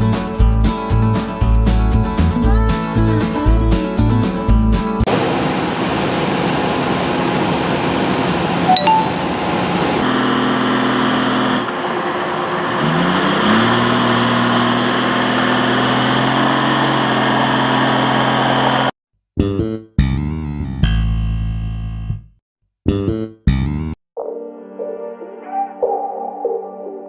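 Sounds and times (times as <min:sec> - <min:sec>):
diesel machinery engine revving: 0:10.0 - 0:19.0.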